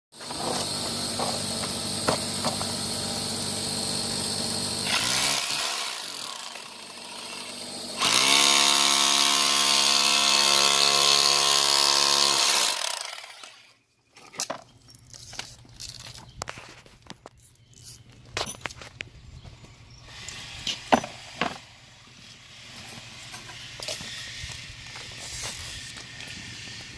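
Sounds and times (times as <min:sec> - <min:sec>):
electric drill motor whine: 0:00.2 - 0:13.7.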